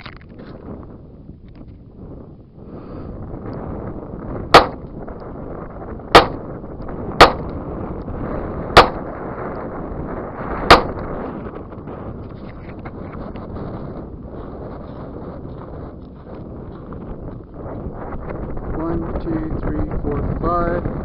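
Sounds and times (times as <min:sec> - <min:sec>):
wind noise on microphone: 0:00.0 - 0:21.0
revolver gunshots: 0:04.6 - 0:04.8, 0:06.2 - 0:06.4, 0:07.2 - 0:07.5, 0:08.8 - 0:09.1, 0:10.7 - 0:11.0.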